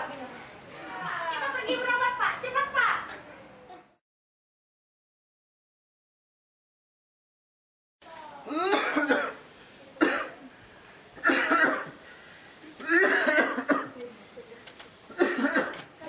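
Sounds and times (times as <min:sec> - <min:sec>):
man coughing: 0:08.5 - 0:09.4, 0:10.0 - 0:10.3, 0:11.2 - 0:12.0, 0:12.8 - 0:14.0, 0:15.1 - 0:15.8.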